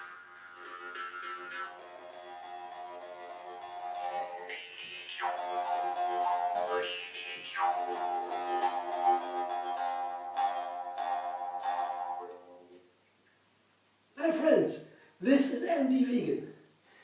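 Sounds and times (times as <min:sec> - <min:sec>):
instrumental music with long held notes: 0:00.0 - 0:12.8.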